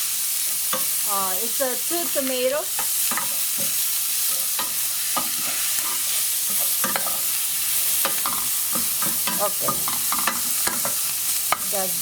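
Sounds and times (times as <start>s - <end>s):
food sizzling in a frying pan: 0.0s - 12.0s
utensil scraping and knocking on pan: 8.0s - 11.8s.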